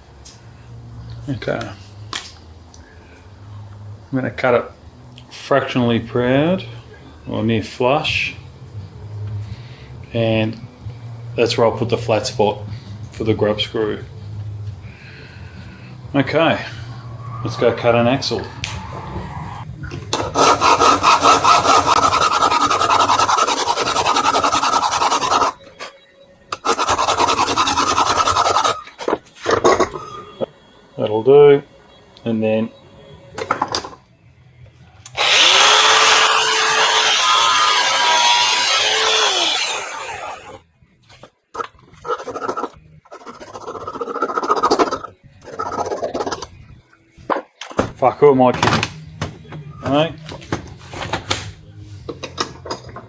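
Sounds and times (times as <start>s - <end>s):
saw cutting metal: 20.2s - 25.6s, 26.6s - 28.8s, 35.2s - 40.6s
scraping strokes: 20.2s - 28.9s
power tool cutting metal: 35.2s - 40.6s.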